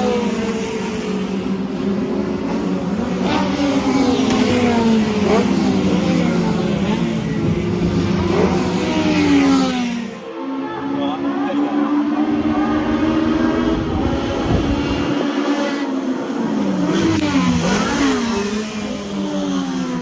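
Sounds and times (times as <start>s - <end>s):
racing car engines revving: 0.0s - 20.0s.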